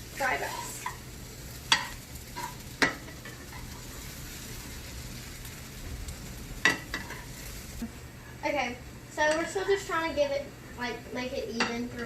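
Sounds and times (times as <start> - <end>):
fried rice sizzling in pan: 0.0 - 8.3
utensil clanking against pan: 1.7 - 3.8.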